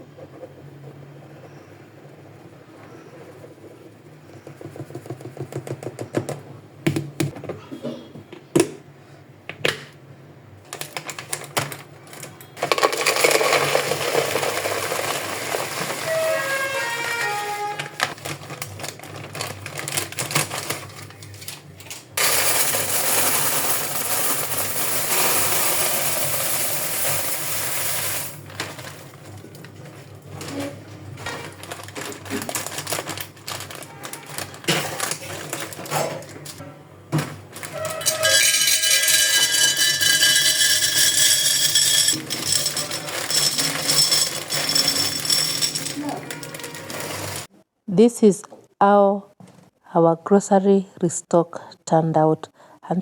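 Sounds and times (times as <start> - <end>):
grain pouring into container: 12.6 - 17.0, 22.2 - 28.4.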